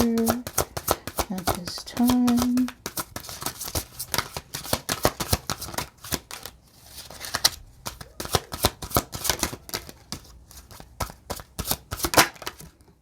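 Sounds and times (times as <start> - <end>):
cards being shuffled: 0.0 - 12.8.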